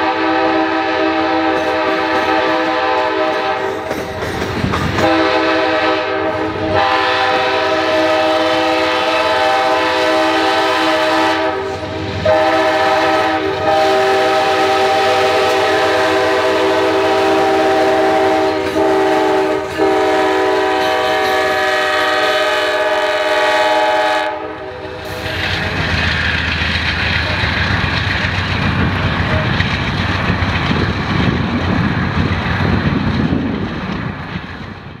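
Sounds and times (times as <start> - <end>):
train horn blasts: 0.0 - 3.9, 4.9 - 25.0
train rumbling on rails: 0.0 - 35.0.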